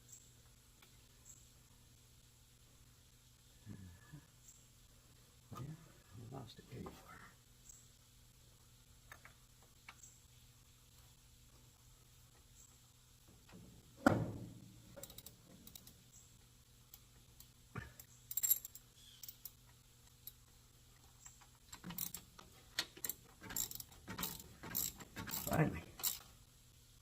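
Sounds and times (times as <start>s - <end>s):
metal tools clinking on engine parts: 14.9s - 16.0s, 23.0s - 26.3s
ratchet wrench clicking: 23.0s - 26.3s.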